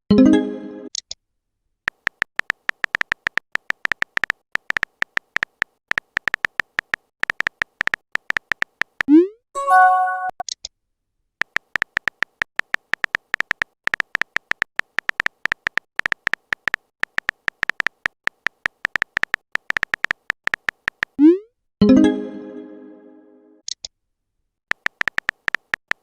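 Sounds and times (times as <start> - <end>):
typing beeps: 2.0 - 10.5, 11.5 - 21.4, 24.7 - 26.0.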